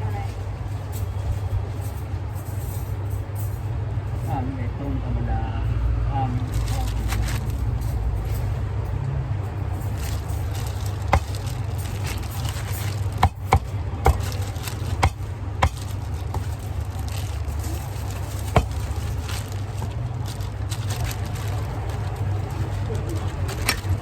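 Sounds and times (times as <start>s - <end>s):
cleaver chopping on wooden block: 13.2s - 14.3s, 14.9s - 16.5s, 18.6s - 18.8s.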